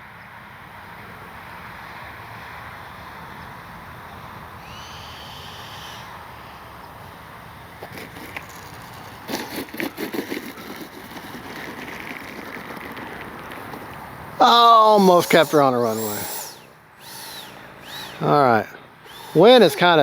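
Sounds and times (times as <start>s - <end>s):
landing gear clattering: 7.8s - 16.6s
steady hiss: 14.0s - 20.0s
short high whine: 14.4s - 19.8s.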